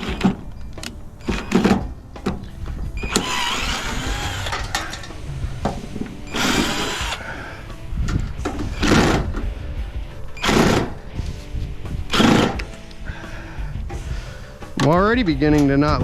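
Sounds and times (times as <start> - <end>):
cordless drill whirring: 3.0 - 5.2, 6.3 - 7.4, 12.1 - 12.7.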